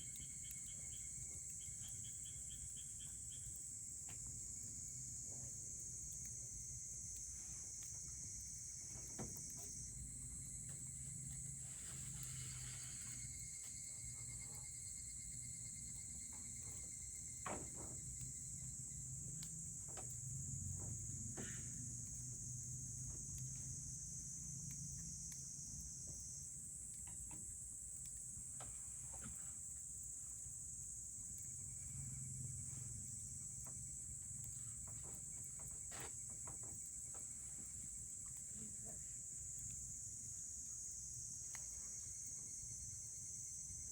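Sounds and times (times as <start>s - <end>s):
campfire crackling: 0.0s - 17.4s, 18.0s - 31.9s
crickets chirping: 0.0s - 43.9s.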